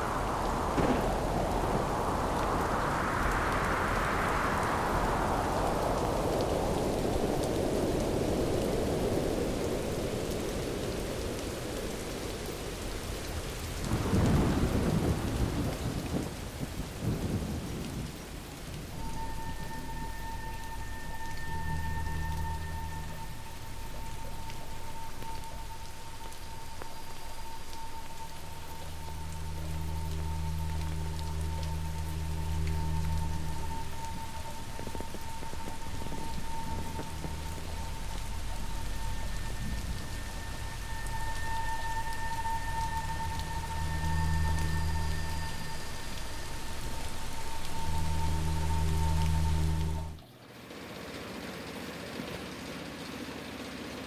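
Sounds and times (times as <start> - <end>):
high-pitched whine: 0.0 - 10.5, 18.9 - 50.3
low hum: 0.0 - 10.8, 18.8 - 50.4
low rumble of thunder: 0.0 - 50.2
rain falling: 0.0 - 54.0
steady high tone: 19.0 - 50.2.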